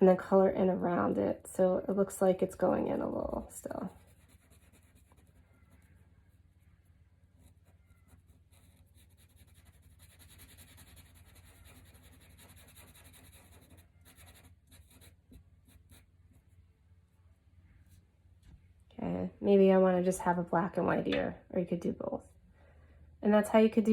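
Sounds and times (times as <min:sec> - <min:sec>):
drawing tool scratching on paper: 0:03.0 - 0:06.6, 0:07.4 - 0:16.5.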